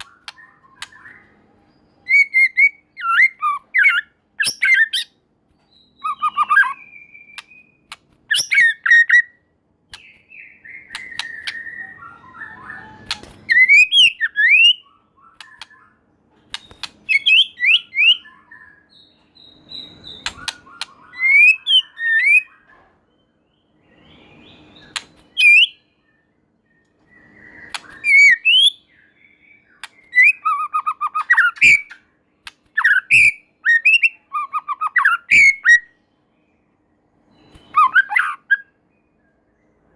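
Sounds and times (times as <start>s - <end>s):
bird singing whistled notes: 0.0s - 9.4s, 10.0s - 32.1s, 32.7s - 39.9s
bird clicks: 7.3s - 8.2s, 10.9s - 11.6s, 13.0s - 13.5s, 15.4s - 15.8s, 16.4s - 17.3s, 20.2s - 21.0s, 24.9s - 25.4s, 27.7s - 28.0s, 29.8s - 30.2s, 31.2s - 32.8s.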